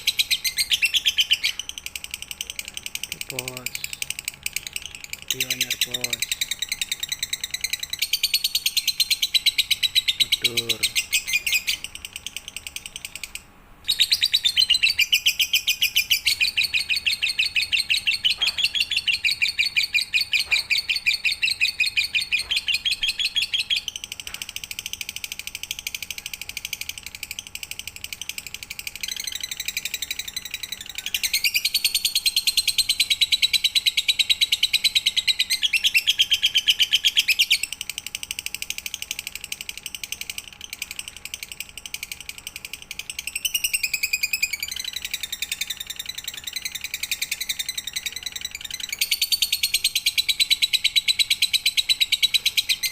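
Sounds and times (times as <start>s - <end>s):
lovebird chattering trill: 0.0s - 52.9s.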